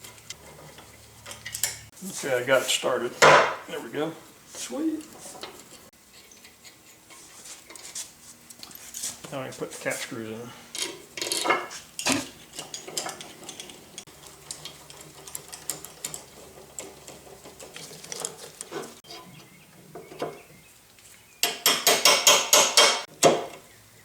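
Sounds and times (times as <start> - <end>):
metal tools clinking and tapping: 10.7 - 19.2, 21.4 - 23.1.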